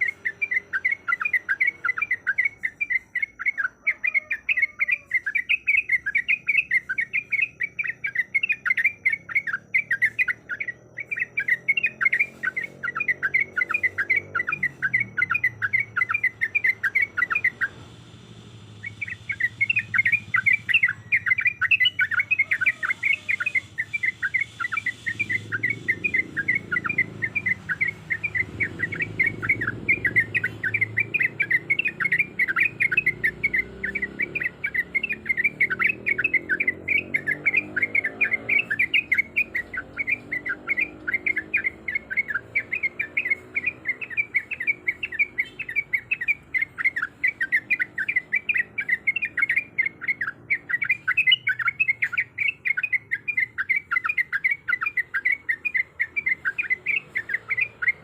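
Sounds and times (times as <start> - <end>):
bird chattering: 0.0 - 58.0.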